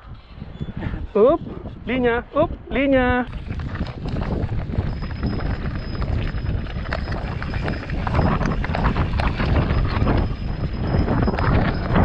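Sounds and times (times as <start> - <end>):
wind rumble on microphone: 0.0 - 12.0
bike rattling over rocks: 3.3 - 12.0.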